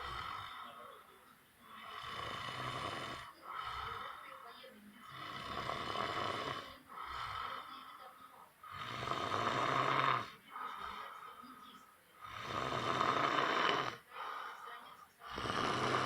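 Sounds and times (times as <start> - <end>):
person snoring: 0.0 - 1.0, 1.6 - 4.2, 5.1 - 7.9, 8.7 - 11.1, 12.2 - 14.6, 15.2 - 16.0.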